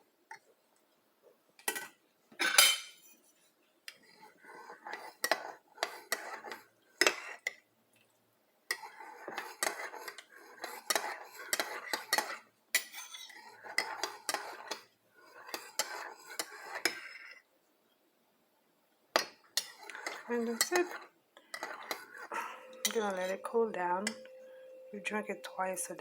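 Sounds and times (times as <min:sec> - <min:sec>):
spoon clinking in a cup: 0:21.6 - 0:24.9.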